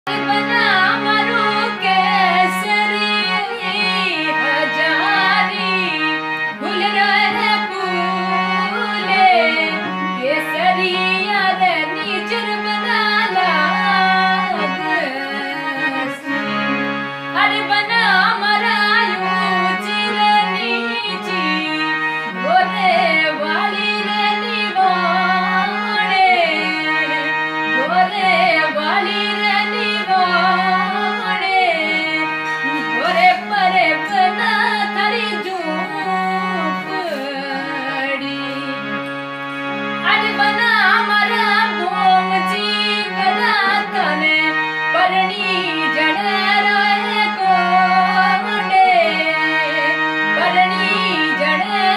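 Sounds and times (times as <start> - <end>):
person singing folk song: 0.1 - 39.0, 39.8 - 51.9
held accompanying chords: 0.1 - 51.9.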